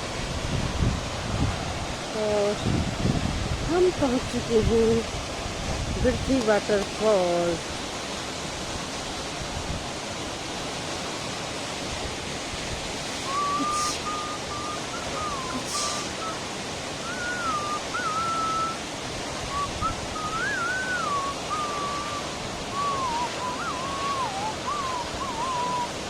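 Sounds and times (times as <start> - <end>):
waterfall roaring: 0.0 - 26.0
person whistling a sliding tune: 13.1 - 16.4, 17.0 - 18.8, 19.5 - 26.0.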